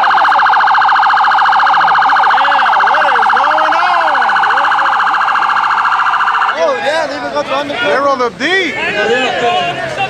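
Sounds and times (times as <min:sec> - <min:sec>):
faint siren wails: 0:00.0 - 0:07.4
police siren warbling: 0:00.0 - 0:08.1.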